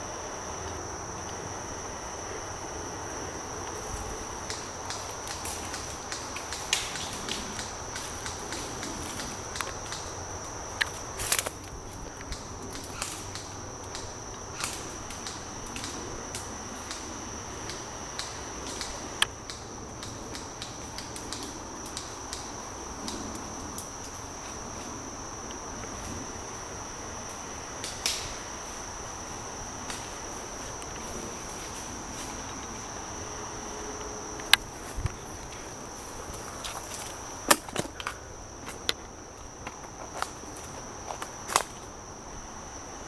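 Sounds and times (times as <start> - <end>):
insects droning: 0.0 - 43.0
sharp snaps: 4.4 - 24.2, 27.8 - 28.4.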